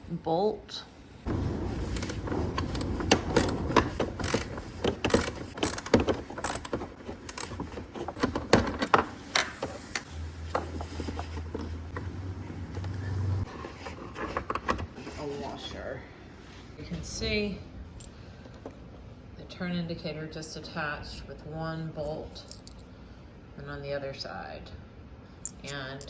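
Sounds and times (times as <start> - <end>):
wrench clicking on metal and plastic: 3.4 - 7.9.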